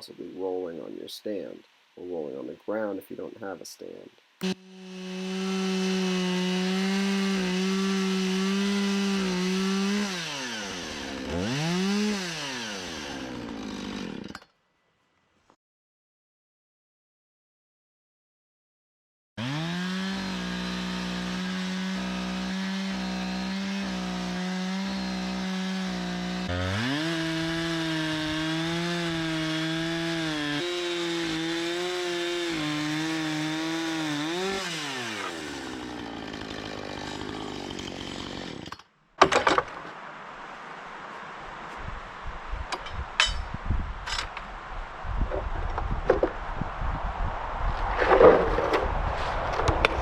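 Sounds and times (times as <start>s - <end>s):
chainsaw ripping a log: 4.4s - 14.5s, 19.4s - 39.7s, 47.9s - 48.9s.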